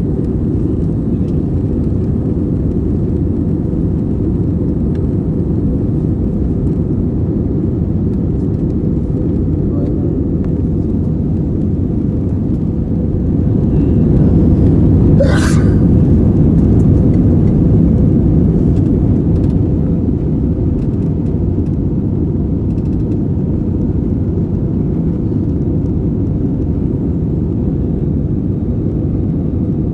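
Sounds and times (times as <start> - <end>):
aircraft cabin engine rumble: 0.0 - 29.9.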